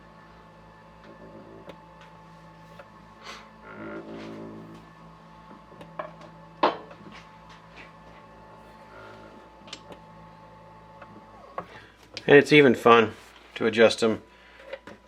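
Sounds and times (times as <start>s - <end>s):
steady machine hum: 0.0s - 15.0s.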